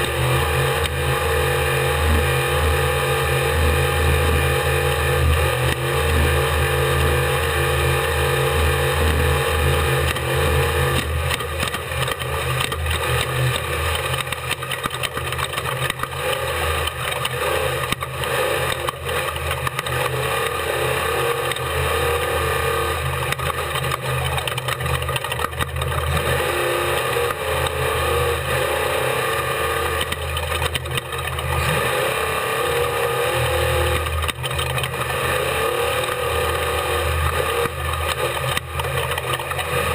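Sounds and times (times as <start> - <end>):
vehicle engine running: 0.0 - 39.9.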